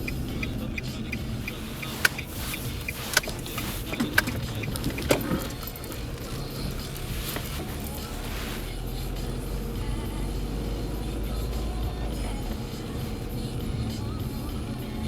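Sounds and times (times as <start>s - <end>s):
sharp clicks: 0.0s - 8.2s
car engine low rumble: 0.0s - 15.0s
light ticking: 0.0s - 15.0s.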